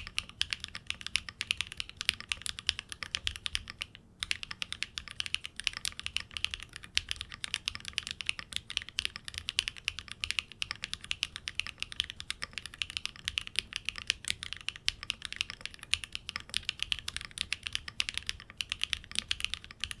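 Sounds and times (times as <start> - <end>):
typing on mechanical keyboard: 0.0 - 20.0.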